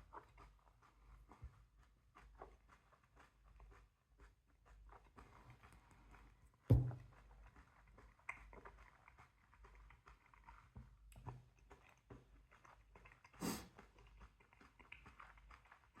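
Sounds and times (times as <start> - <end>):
wet chewing clicks: 0.0 - 16.0
sharp thump: 6.7 - 7.0.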